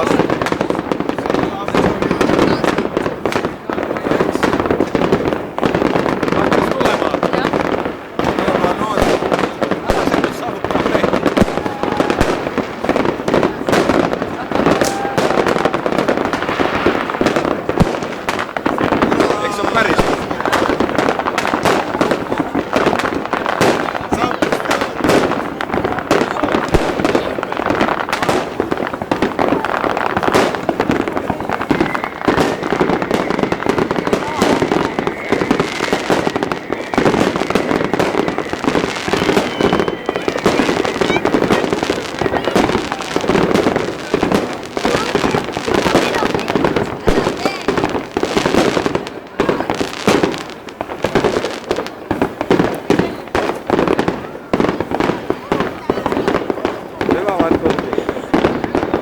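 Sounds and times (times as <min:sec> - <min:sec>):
fireworks bangs and crackles: 0:00.0 - 0:59.0
faint rising whistles: 0:31.4 - 0:41.5.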